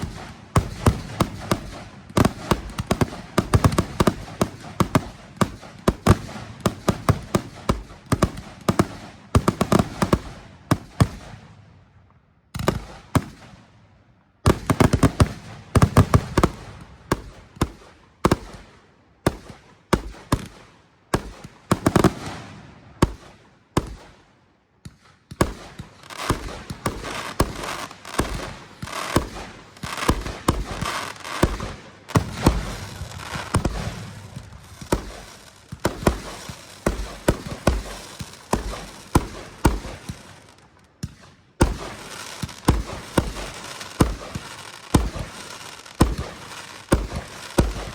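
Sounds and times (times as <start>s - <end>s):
fireworks bangs and crackles: 0.0s - 47.9s.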